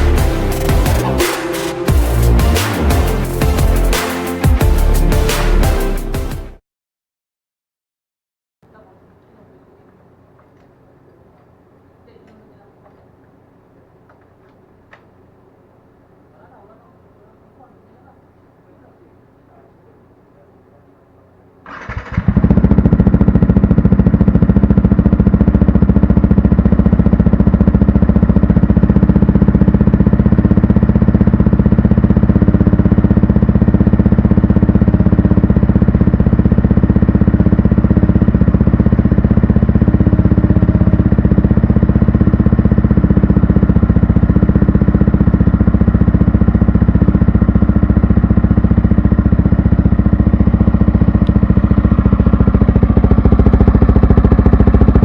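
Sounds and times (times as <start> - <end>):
motorcycle engine idling loudly: 0.0 - 6.2, 21.7 - 55.0.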